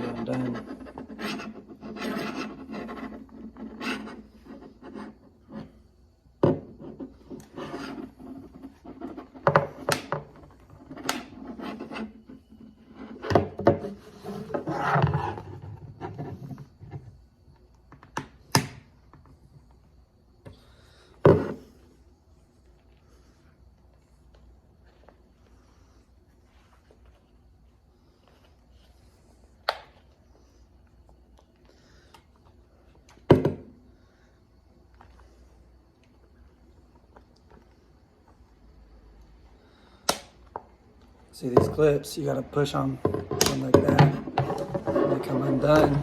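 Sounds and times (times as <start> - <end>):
plastic scraping against trim: 42.9 - 46.0.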